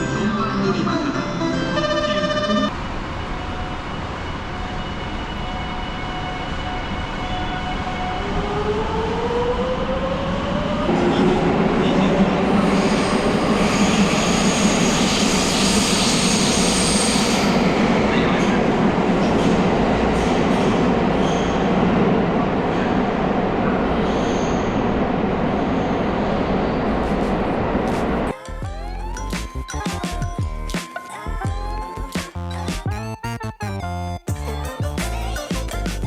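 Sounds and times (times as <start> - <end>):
train wheels on rails: 10.9 - 26.1.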